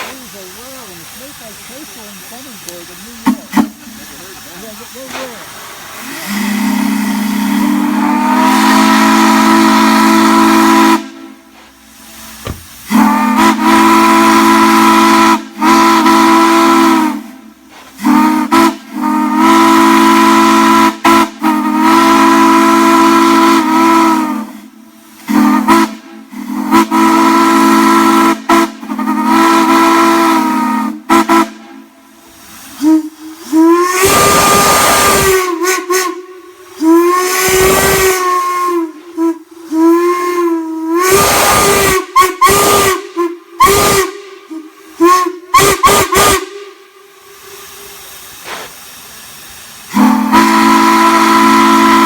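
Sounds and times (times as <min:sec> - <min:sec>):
steam hiss: 0:00.0 - 0:52.0
steam whistle blasts: 0:05.0 - 0:52.0.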